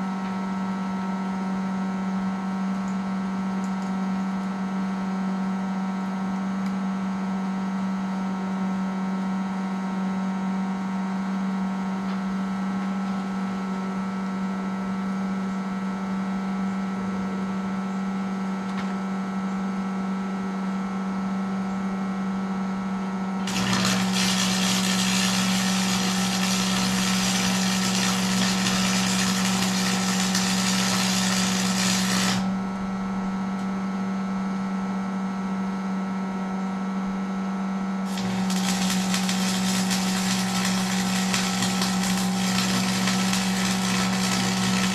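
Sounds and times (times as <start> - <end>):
welding arc crackling: 23.4 - 33.0, 38.1 - 44.9
electrical hum: 23.4 - 35.2, 37.9 - 44.9.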